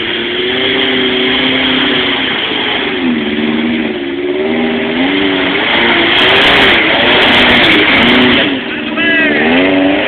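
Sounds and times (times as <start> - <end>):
car engine revving: 0.0 - 10.0.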